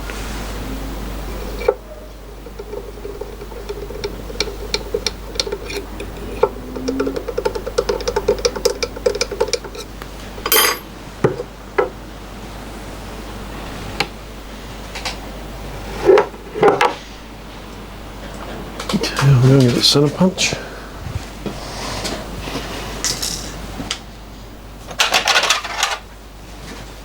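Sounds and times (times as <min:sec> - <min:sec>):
faint hum: 0:00.0 - 0:11.8
metallic clinks and knocks: 0:02.4 - 0:10.9.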